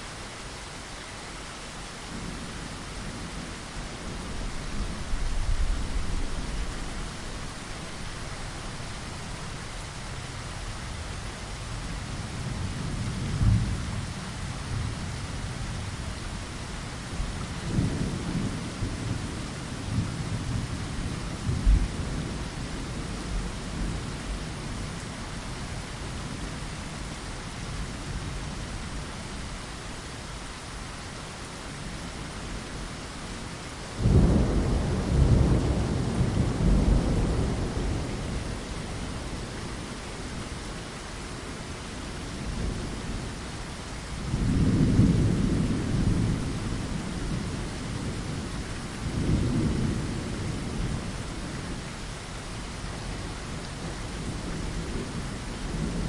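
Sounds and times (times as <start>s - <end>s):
rain against a window: 0.0s - 56.0s
thunder rumbling: 34.0s - 39.9s.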